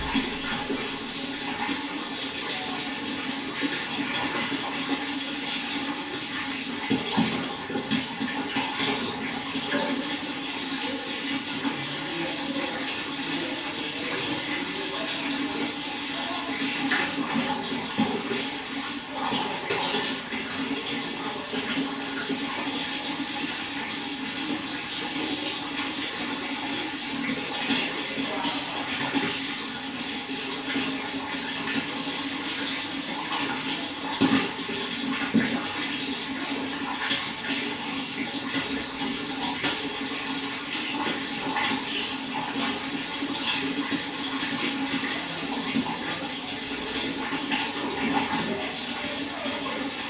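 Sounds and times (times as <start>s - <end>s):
loud water splashes: 0.0s - 2.6s
running water splashing and gurgling: 0.0s - 50.0s.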